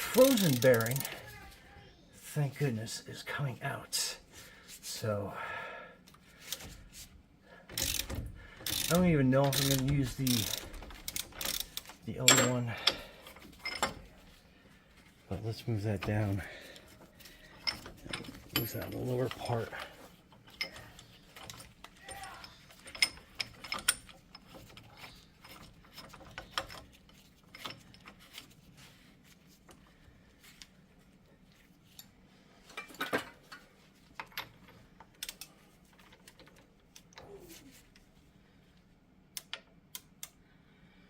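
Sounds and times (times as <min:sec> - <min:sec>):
metal hand tools clanking: 0:07.8 - 0:14.1, 0:17.4 - 0:26.7.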